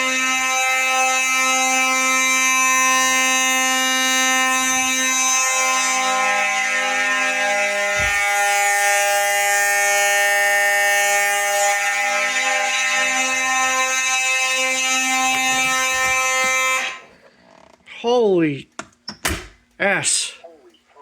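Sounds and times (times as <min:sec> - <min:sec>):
fire alarm buzzing: 0:00.0 - 0:17.3.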